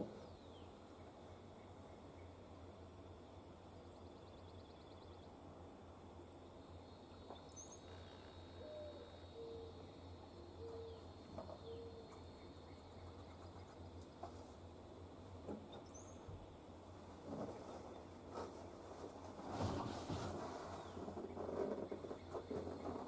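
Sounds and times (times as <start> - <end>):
bird hooting: 8.6 - 9.8, 11.7 - 12.2.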